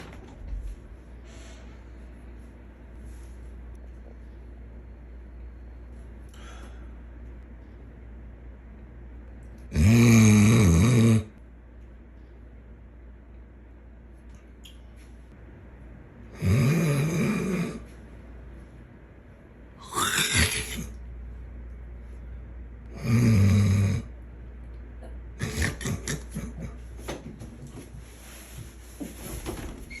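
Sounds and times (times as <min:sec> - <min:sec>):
person snoring loudly: 0:09.7 - 0:11.4, 0:16.3 - 0:17.9, 0:19.8 - 0:20.9, 0:22.9 - 0:24.1.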